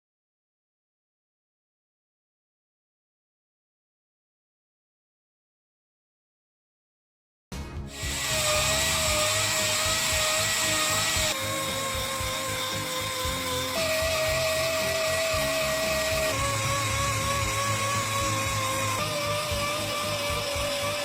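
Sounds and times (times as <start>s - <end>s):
power tool whining: 7.9s - 21.0s.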